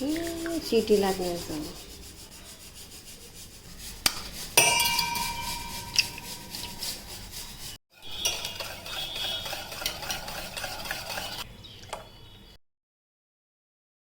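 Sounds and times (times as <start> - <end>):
utensil stirring in mixing bowl: 0.0 - 12.1
utensil clinking against bowl: 4.1 - 6.8, 8.0 - 12.0.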